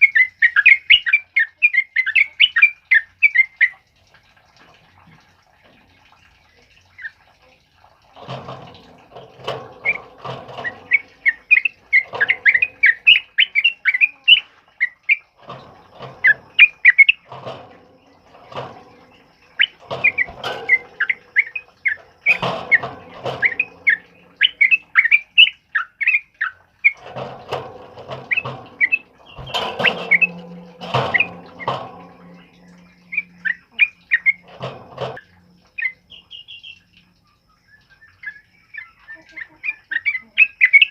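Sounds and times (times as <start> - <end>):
bird singing whistled notes: 35.8 - 40.9.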